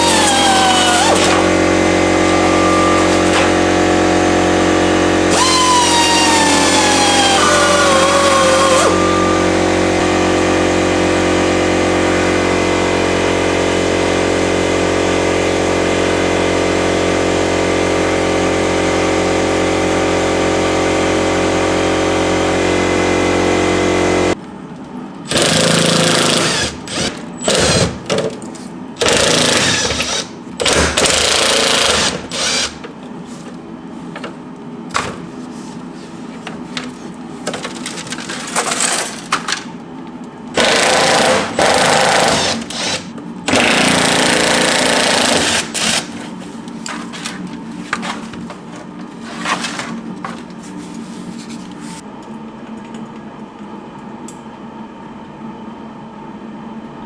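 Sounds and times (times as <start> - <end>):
power tool bursts: 0.0 - 11.8, 25.3 - 28.0, 29.0 - 32.8, 40.6 - 46.2
machine humming: 0.0 - 15.4, 36.5 - 48.8.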